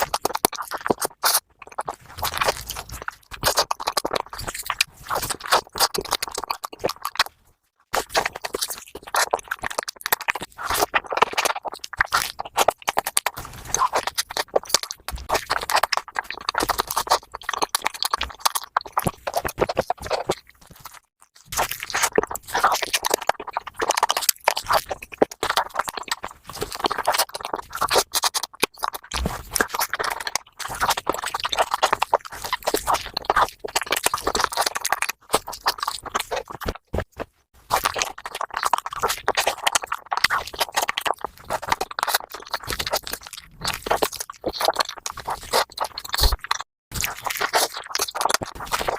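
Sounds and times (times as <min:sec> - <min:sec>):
chewing and biting food: 0:00.0 - 0:48.9.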